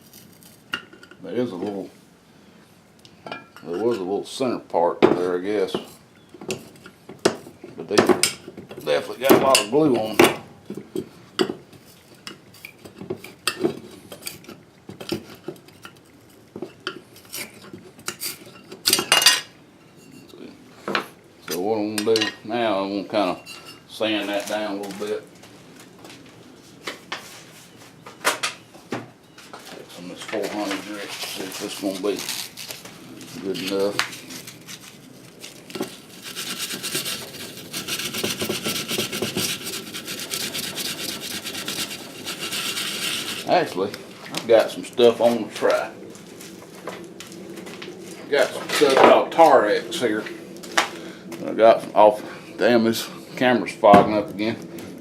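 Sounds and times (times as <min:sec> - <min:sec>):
metal tool scraping a cap: 0:16.7 - 0:20.4, 0:35.8 - 0:43.6
sandpaper rubbing by hand: 0:30.9 - 0:32.8, 0:35.9 - 0:43.5.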